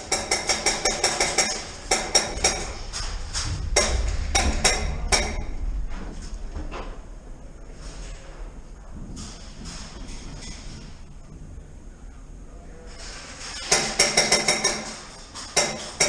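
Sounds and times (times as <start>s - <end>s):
low rumble: 1.8s - 10.2s.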